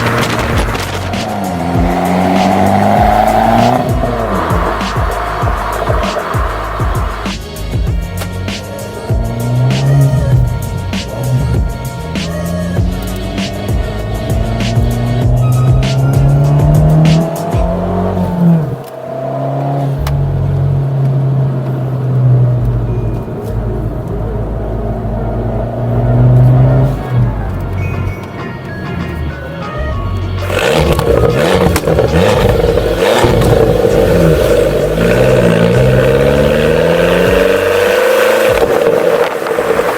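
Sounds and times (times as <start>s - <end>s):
car engine revving: 0.0s - 39.9s
car engine running steadily: 0.0s - 39.9s.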